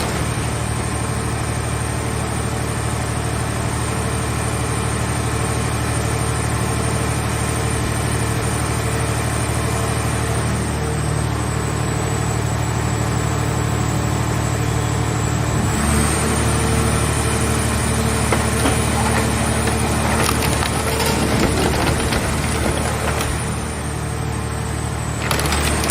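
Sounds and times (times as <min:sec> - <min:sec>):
hydraulic power unit running: 0:11.2 - 0:25.9
car shell crackling as crushed: 0:17.7 - 0:24.1, 0:25.1 - 0:25.9.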